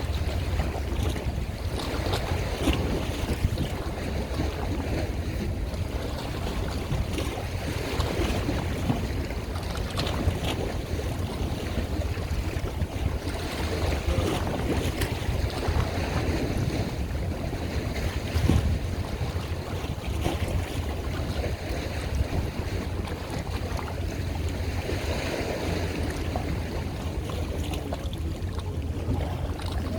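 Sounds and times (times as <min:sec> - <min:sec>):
wind buffeting microphone: 0:00.0 - 0:29.9
water washing: 0:25.4 - 0:29.9.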